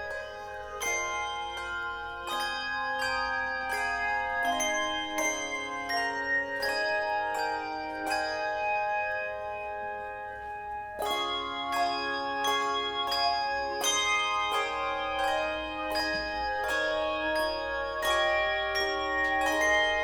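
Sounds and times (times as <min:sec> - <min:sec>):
tuned bells playing music: 0:00.0 - 0:20.0.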